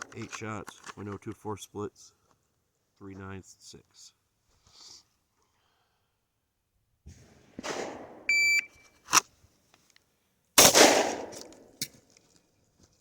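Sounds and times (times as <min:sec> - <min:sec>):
pistol shot: 0:07.6 - 0:08.3, 0:10.6 - 0:11.7
shot timer beep: 0:08.3 - 0:08.8.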